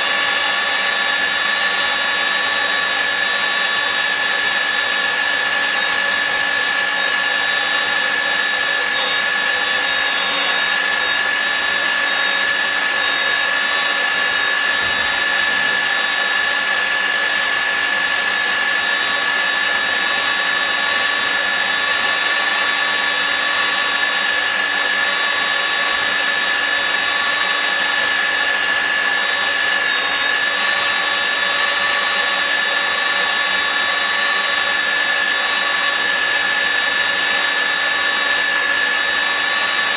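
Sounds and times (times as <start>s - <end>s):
magnetic drill whining: 0.0s - 39.9s.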